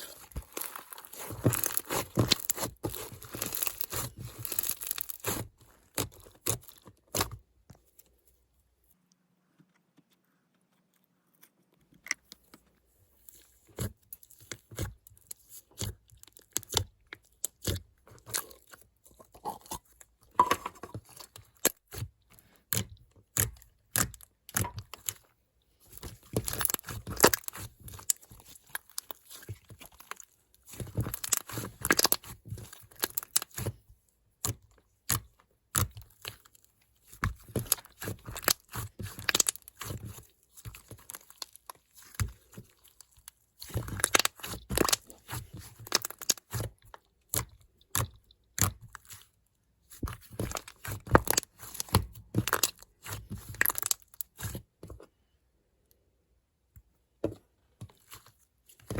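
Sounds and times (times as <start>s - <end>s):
slime clicking and crackling: 0.0s - 7.4s, 13.8s - 19.6s, 21.0s - 25.2s, 25.9s - 54.7s.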